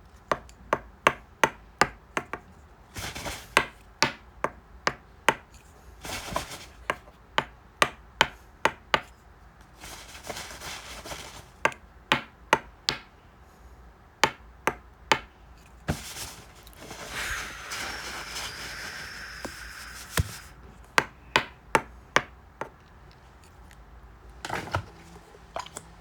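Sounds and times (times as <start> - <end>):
rustling: 15.8 - 20.6
sharp taps: 19.4 - 20.6.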